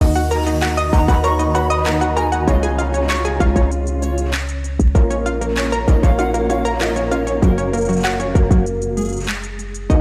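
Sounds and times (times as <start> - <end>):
sustained electronic chords: 0.0 - 4.4, 5.0 - 10.0
drum beat: 1.0 - 1.4, 2.5 - 2.7, 3.4 - 3.8, 4.8 - 5.2, 5.9 - 6.4, 7.4 - 7.7, 8.4 - 8.7.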